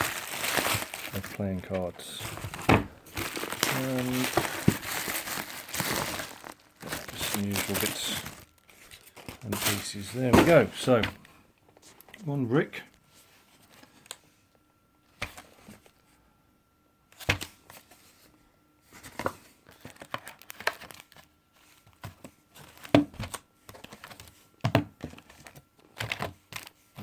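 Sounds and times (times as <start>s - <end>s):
wrapping torn and crinkled: 0.0s - 10.7s, 19.8s - 21.2s.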